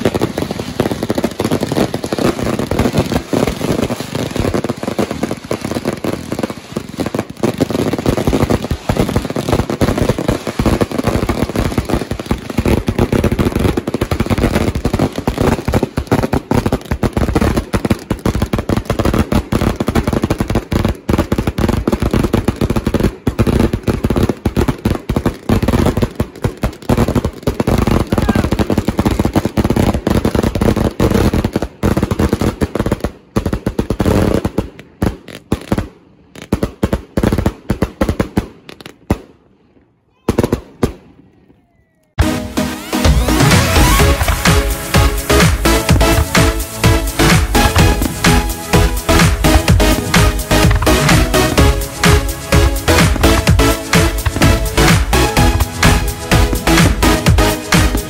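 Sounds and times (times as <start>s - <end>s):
fireworks bangs and crackle: 0.0s - 58.0s.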